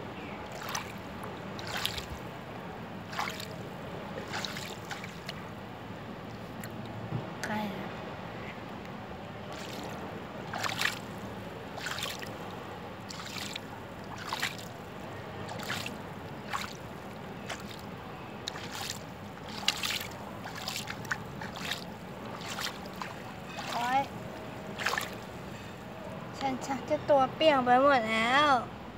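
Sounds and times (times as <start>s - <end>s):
small waves lapping on beach: 0.4s - 5.6s, 9.4s - 25.9s
water splash: 0.5s - 2.3s, 3.1s - 5.4s, 9.5s - 25.5s.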